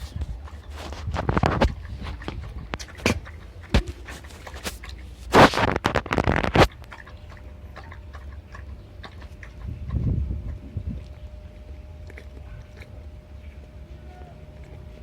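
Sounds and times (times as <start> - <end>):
wind rumbling on microphone: 0.0 - 7.0, 9.0 - 13.3.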